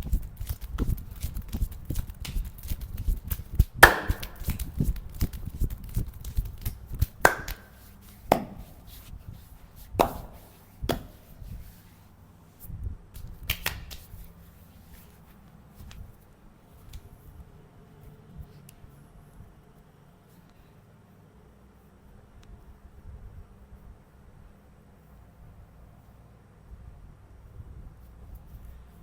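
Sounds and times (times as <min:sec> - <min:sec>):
hand slaps on body: 0:03.3 - 0:05.4, 0:06.2 - 0:08.8, 0:10.0 - 0:11.2, 0:13.2 - 0:14.2
light hand taps: 0:06.2 - 0:09.2, 0:09.9 - 0:11.4.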